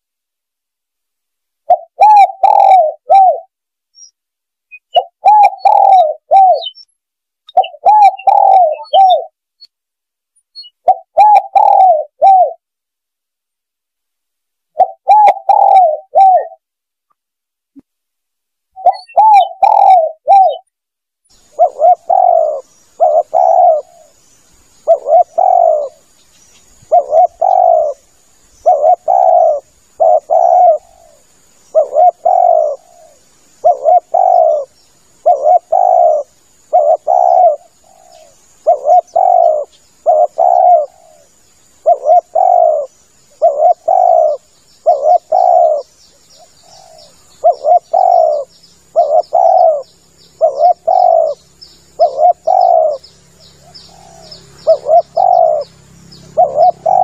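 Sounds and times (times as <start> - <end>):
dove cooing: 1.6 - 3.5, 4.8 - 6.8, 7.5 - 9.4, 10.6 - 12.6, 14.7 - 16.6, 18.8 - 20.7, 21.4 - 24.2, 24.8 - 26.1, 26.7 - 57.0
faint high hiss: 17.8 - 57.0.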